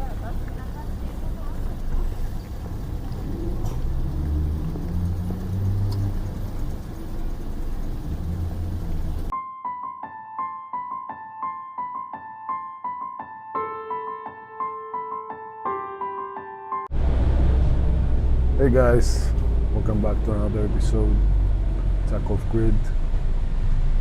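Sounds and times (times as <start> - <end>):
rumbling motor: 0.0 - 9.3, 16.9 - 24.0
electric piano music: 0.0 - 16.9.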